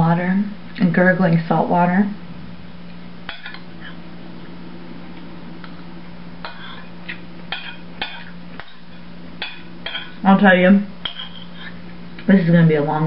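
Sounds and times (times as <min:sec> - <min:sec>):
steady low hum: 0:00.0 - 0:13.0
cutlery clinking on a plate: 0:09.4 - 0:10.2, 0:11.0 - 0:11.7.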